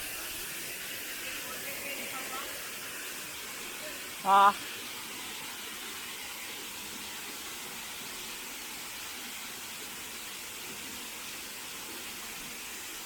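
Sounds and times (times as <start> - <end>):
stream rushing: 0.0 - 9.3.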